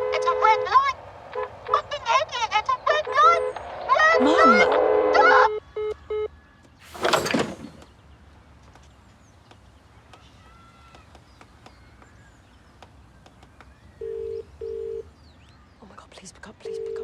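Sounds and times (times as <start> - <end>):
telephone ringback tone: 14.0 - 15.1.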